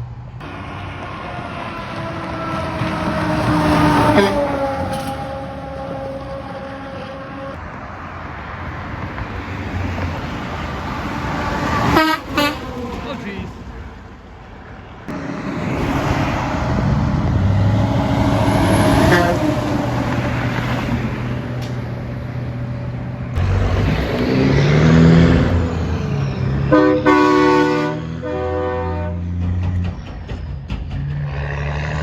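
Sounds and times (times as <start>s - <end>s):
trucks passing: 0.0s - 32.0s
truck air horn blasts: 1.5s - 7.6s, 11.8s - 12.7s, 18.5s - 19.8s, 26.7s - 29.4s.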